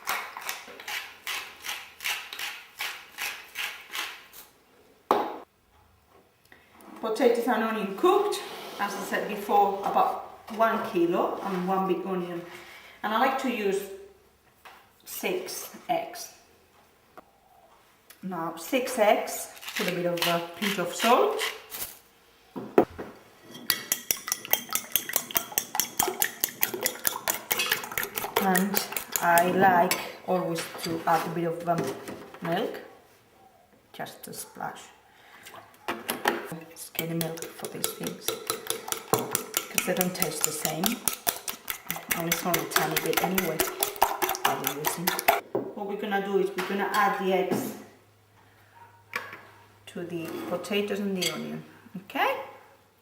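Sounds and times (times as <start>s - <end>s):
pepper mill grinding: 19.5s - 22.0s, 23.7s - 29.6s, 36.9s - 45.4s
utensil clicking against bowl: 23.9s - 29.5s, 37.0s - 45.4s.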